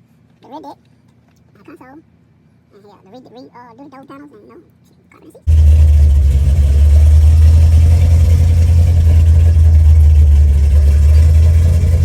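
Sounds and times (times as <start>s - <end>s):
vehicle engine rumbling: 5.5s - 12.0s.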